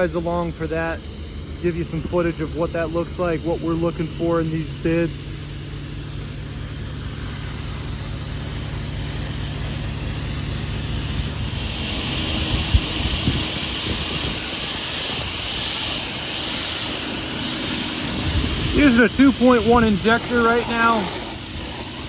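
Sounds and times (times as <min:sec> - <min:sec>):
hissing water spray: 0:00.0 - 0:22.0
pressure washer engine running: 0:00.0 - 0:22.0.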